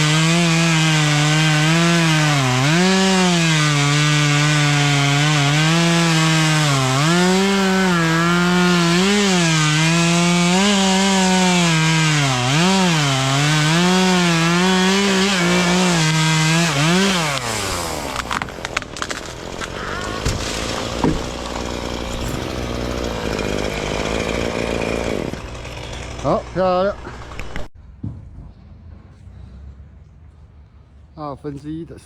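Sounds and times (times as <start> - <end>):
chainsaw cutting wood: 0.0 - 27.7
sharp cracks and knocks: 17.0 - 23.1.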